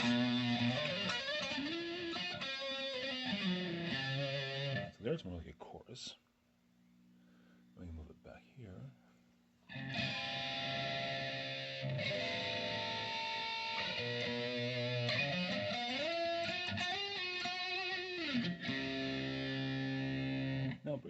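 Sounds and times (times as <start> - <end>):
distorted electric guitar with flanger: 0.0 - 5.0, 9.7 - 20.8.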